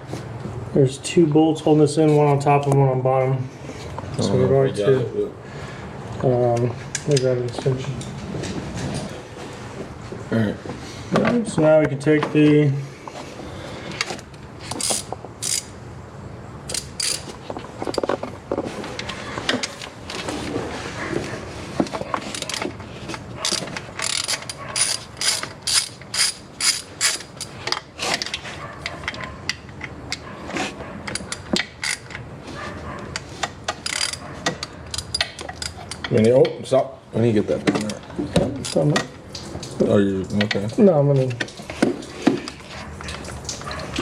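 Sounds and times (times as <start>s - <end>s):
hand ratchet clicking: 14.7s - 15.7s, 16.7s - 17.2s, 23.4s - 27.8s, 31.1s - 32.2s, 33.2s - 36.1s.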